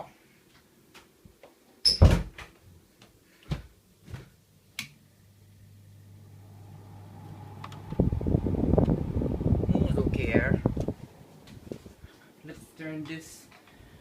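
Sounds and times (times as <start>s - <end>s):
air conditioner fan hum: 2.2s - 14.0s
air conditioner control clicks: 7.6s - 8.0s.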